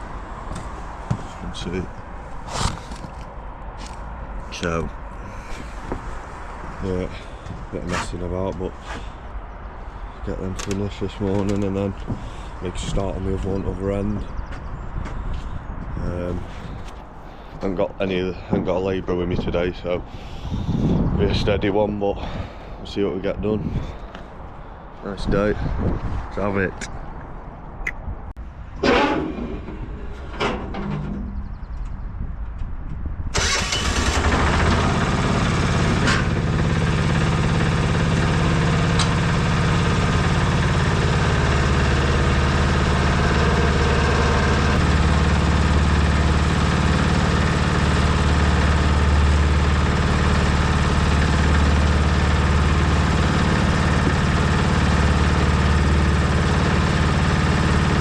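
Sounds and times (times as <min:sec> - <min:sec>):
cement mixer engine running: 0:33.4 - 0:58.0.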